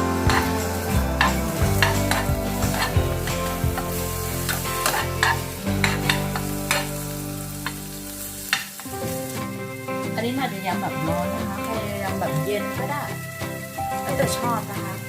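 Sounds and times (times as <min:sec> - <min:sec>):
beef sizzling in a pan: 0:00.0 - 0:15.0
quiet background music: 0:00.0 - 0:15.0
utensil scraping and clinking pan: 0:01.2 - 0:07.0.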